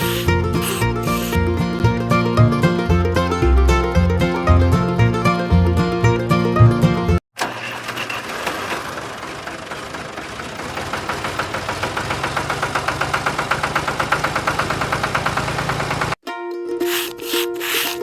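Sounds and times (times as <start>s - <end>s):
small engine chugging: 0.0s - 2.1s, 8.1s - 16.2s, 16.8s - 18.0s.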